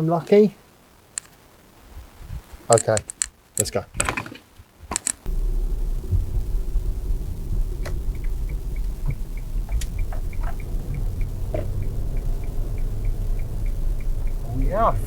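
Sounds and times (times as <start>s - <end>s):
odd clicks: 1.1s - 1.4s, 2.7s - 5.4s, 7.6s - 15.0s
turn-signal relay ticking: 4.9s - 15.0s
car engine low rumble: 5.2s - 15.0s.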